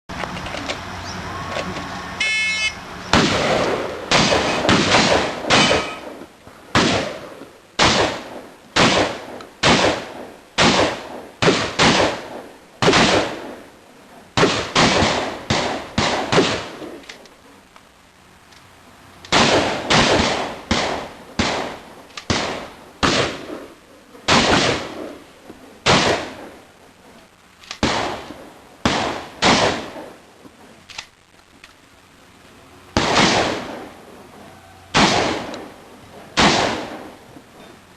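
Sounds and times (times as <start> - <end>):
electronic start beep: 2.2 - 2.8
shotgun shots echoing: 3.1 - 13.7, 14.4 - 17.0, 19.3 - 25.2, 25.8 - 26.6, 27.7 - 30.2, 33.0 - 34.0, 34.9 - 35.8, 36.4 - 37.2.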